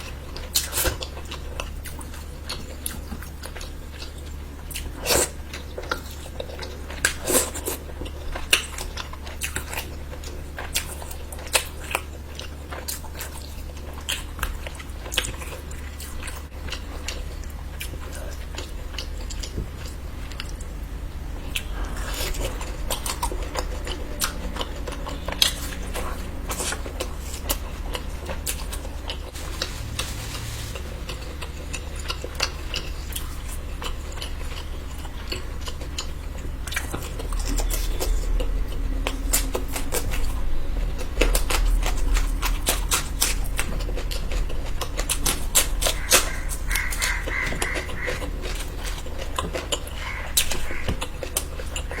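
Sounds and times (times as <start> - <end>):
low hum: 0.0 - 52.0
wet chewing and mouth smacks: 31.1 - 52.0.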